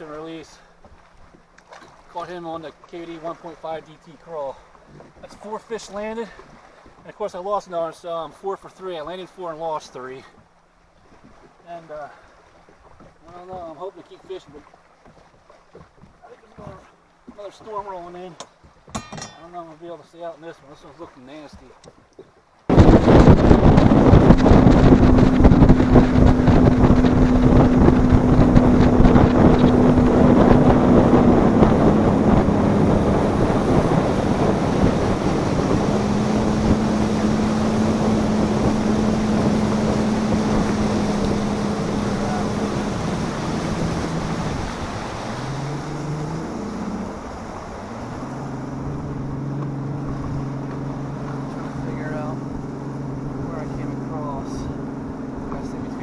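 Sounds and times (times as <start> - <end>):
boat motor running: 8.7 - 19.6, 21.0 - 56.0
wind noise on microphone: 22.7 - 53.5.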